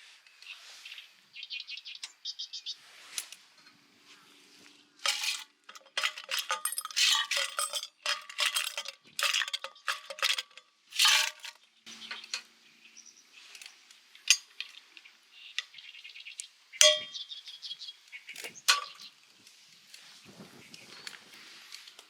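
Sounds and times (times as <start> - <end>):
metal utensils scraping cookware: 5.0 - 11.5.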